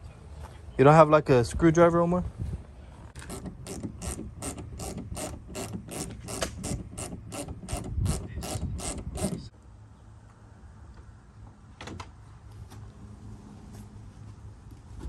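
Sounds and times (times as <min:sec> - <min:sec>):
hand ratchet clicking: 0:03.2 - 0:09.5.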